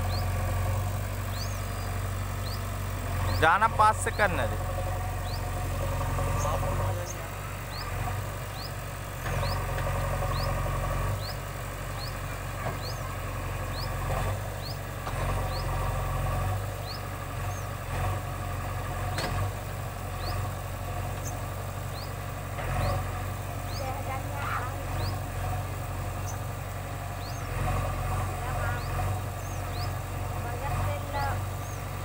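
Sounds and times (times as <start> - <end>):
diesel engine droning: 0.0 - 32.0
high rising chirp: 1.3 - 4.5.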